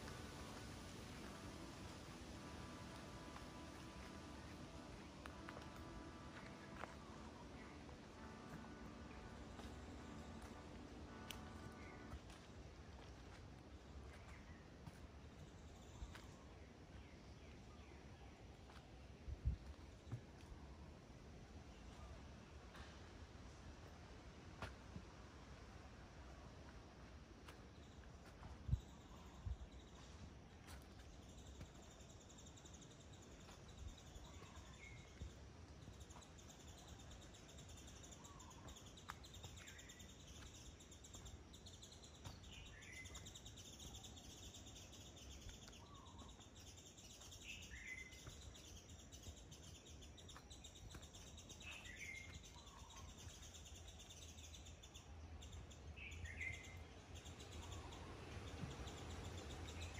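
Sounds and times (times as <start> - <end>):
faint outdoor hiss: 0.0 - 59.9
faint bird calls: 36.2 - 41.0, 45.6 - 48.8.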